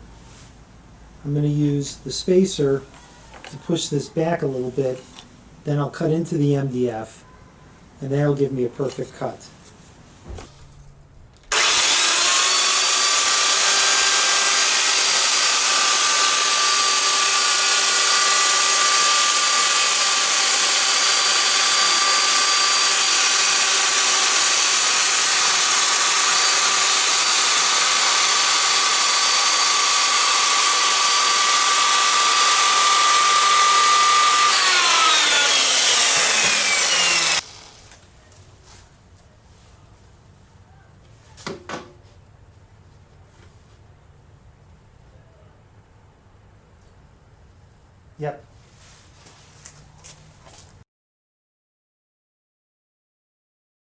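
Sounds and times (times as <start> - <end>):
circular saw cutting with high whine: 11.5 - 37.9.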